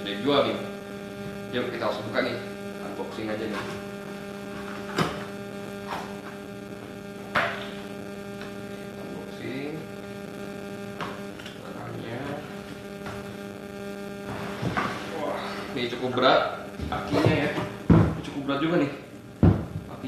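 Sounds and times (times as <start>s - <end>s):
electrical hum: 0.0s - 20.0s.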